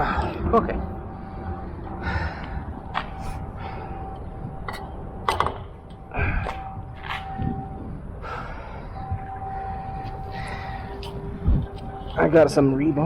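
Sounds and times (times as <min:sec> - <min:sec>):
faint steady tone: 0:00.0 - 0:13.0
hard breathing: 0:01.1 - 0:04.4, 0:06.0 - 0:06.8, 0:08.2 - 0:12.0
sharp clicks and knocks: 0:04.7 - 0:05.7.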